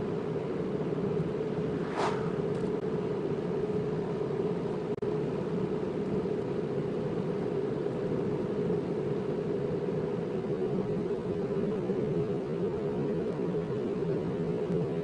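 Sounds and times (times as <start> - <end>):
car engine and tyre drone: 1.5 - 2.8.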